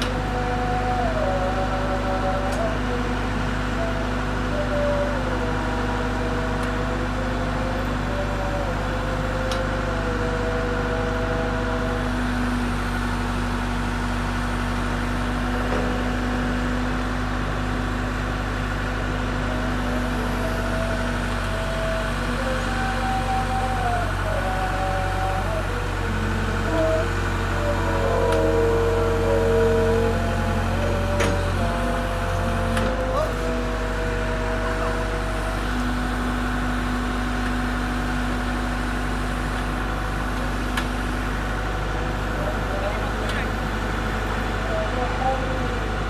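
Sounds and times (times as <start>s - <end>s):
diesel engine running: 0.0s - 46.0s
higher tone shifting pitch: 19.5s - 37.0s.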